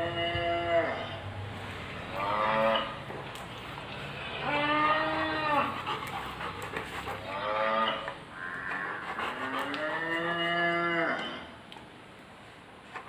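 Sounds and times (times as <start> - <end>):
recorded cow mooing from speaker: 2.1 - 3.0, 4.0 - 5.8, 7.2 - 8.6.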